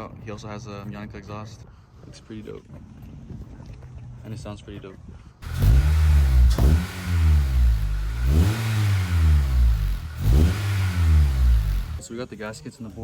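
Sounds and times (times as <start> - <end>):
car engine revving: 5.4 - 12.0.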